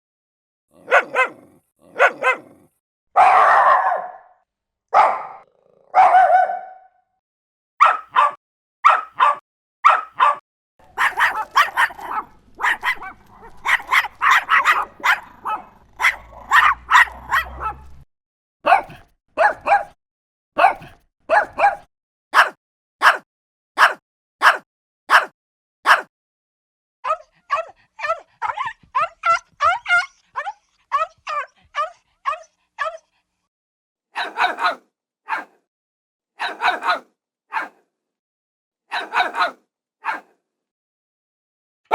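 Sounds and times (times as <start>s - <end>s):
small dogs barking: 0.8s - 2.6s, 3.2s - 6.9s, 7.8s - 18.0s, 18.7s - 20.0s, 20.6s - 23.2s, 23.8s - 25.3s, 25.9s - 26.1s, 27.1s - 33.0s, 34.2s - 35.6s, 36.4s - 37.8s, 38.9s - 40.3s.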